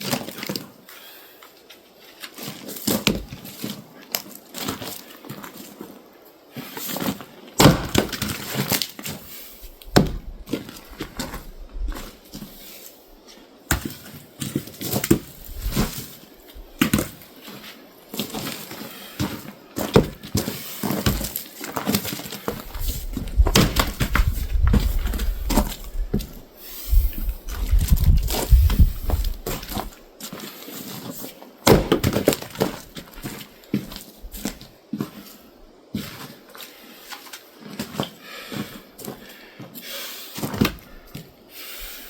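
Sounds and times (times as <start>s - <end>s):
axe blows splitting wood: 7.6s - 8.5s, 9.9s - 10.3s, 31.6s - 32.7s.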